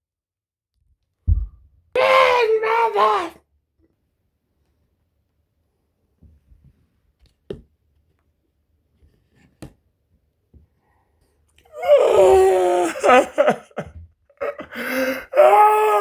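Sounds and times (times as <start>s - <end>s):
person wailing and moaning: 2.0s - 3.3s, 11.7s - 16.0s.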